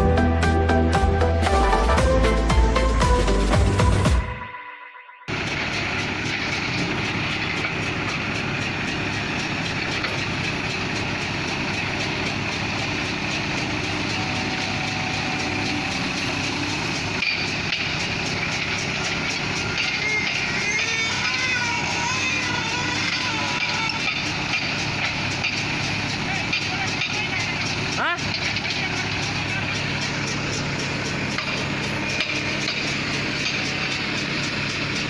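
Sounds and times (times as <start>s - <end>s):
music: 0.0s - 5.3s
heavy diesel engine running: 5.3s - 35.0s.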